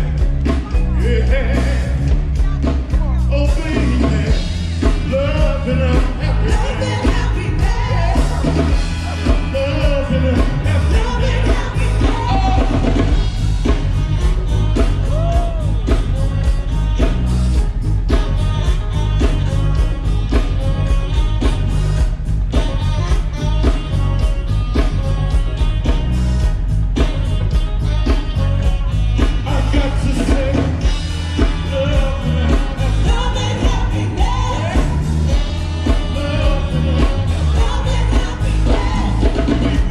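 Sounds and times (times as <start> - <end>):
person singing: 0.0 - 17.2, 28.0 - 39.9
drum kit: 0.0 - 39.9
heavy bass line: 0.0 - 39.9.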